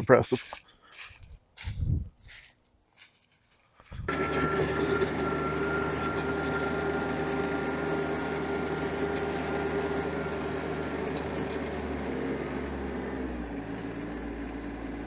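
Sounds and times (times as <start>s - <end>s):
tractor engine running: 4.0s - 15.0s.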